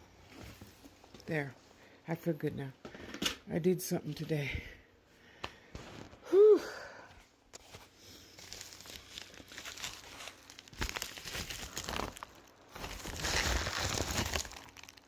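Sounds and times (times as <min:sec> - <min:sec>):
person exclaiming whew: 0:06.2 - 0:06.8
packaging crinkling: 0:08.2 - 0:15.0.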